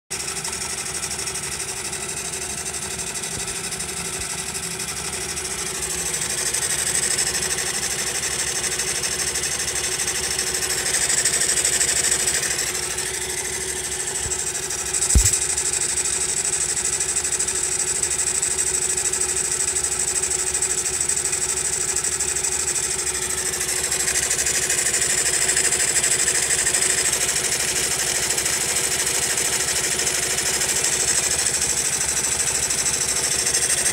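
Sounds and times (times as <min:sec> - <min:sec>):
motorcycle engine idling and revving: 0:00.1 - 0:33.9
sharp click: 0:14.2 - 0:15.8.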